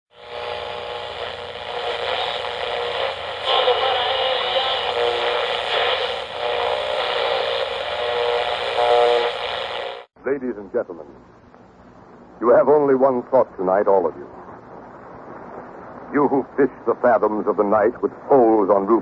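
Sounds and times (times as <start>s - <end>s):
radio static hiss: 0.1s - 10.1s.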